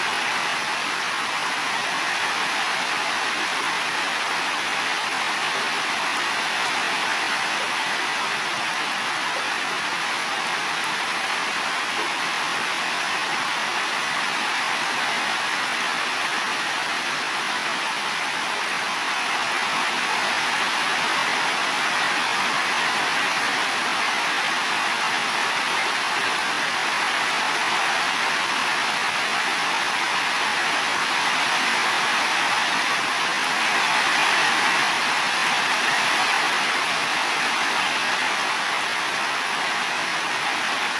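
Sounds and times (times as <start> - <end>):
heavy rain on roofs: 0.0 - 40.9.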